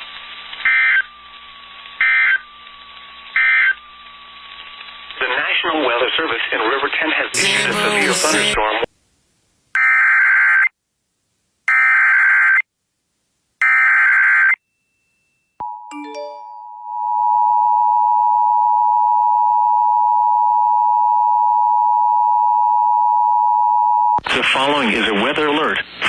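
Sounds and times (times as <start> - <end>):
steady loud alert tone: 7.4 - 8.6, 15.9 - 17.0.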